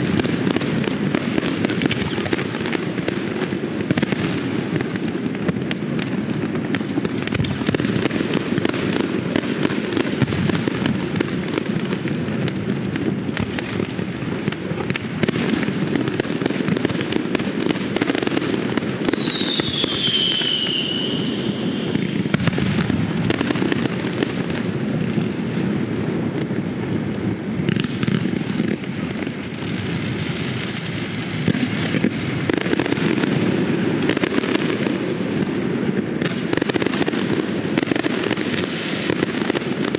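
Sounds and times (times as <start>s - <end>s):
fireworks bangs and crackling: 0.0s - 39.9s
whistling firework: 0.0s - 39.9s.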